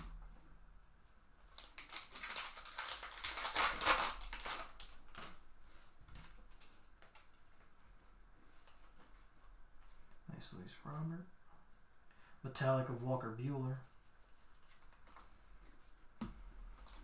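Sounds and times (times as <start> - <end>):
faint rustles and clicks: 1.4 - 10.2, 13.8 - 17.0
card pack wrapper tearing: 1.5 - 5.4.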